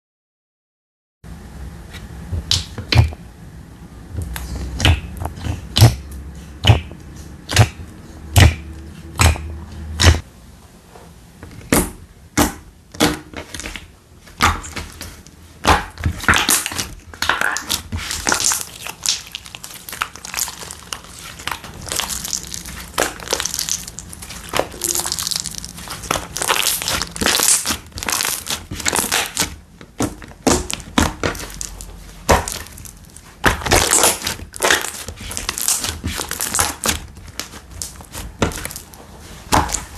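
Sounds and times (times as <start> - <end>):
slime popping and crackling: 15.6 - 39.9.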